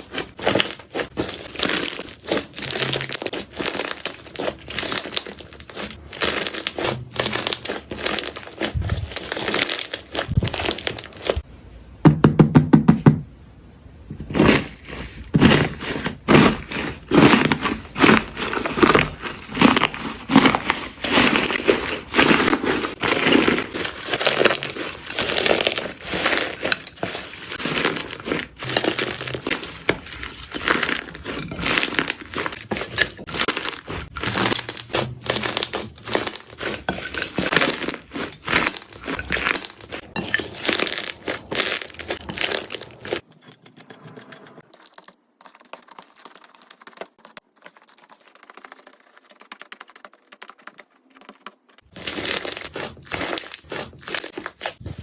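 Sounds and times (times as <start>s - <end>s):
slime crackling and popping: 0.0s - 11.4s, 14.3s - 43.2s, 45.5s - 55.0s.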